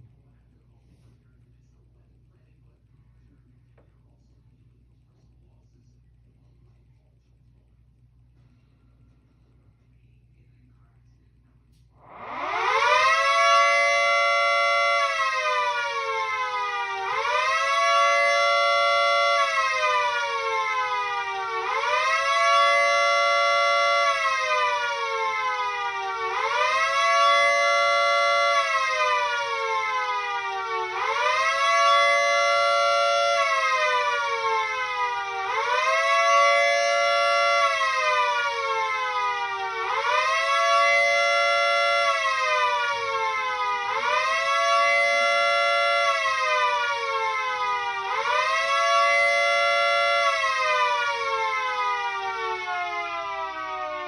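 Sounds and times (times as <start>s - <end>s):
dual-tone siren wailing: 12.0s - 54.0s.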